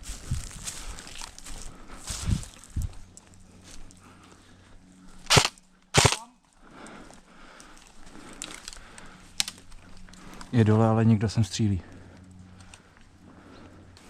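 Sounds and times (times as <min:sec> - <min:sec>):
airsoft gun shots: 0:05.3 - 0:06.2.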